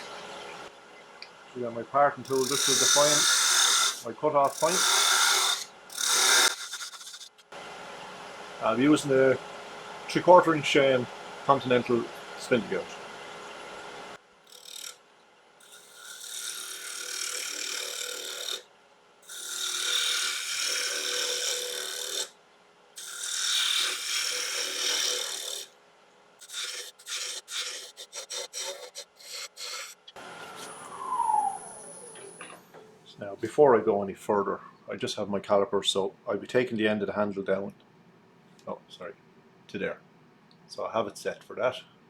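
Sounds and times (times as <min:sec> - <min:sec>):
lathe gouge scraping wood: 0:02.3 - 0:07.4, 0:15.6 - 0:18.6, 0:19.3 - 0:22.3, 0:23.0 - 0:25.7, 0:26.4 - 0:30.0.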